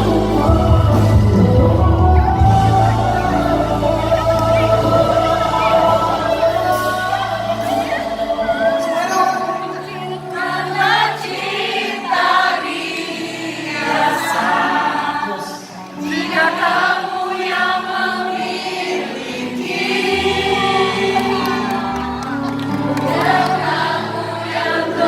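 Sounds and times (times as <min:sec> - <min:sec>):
bass: 0:00.0 - 0:09.7
live pop song singing: 0:00.0 - 0:25.0.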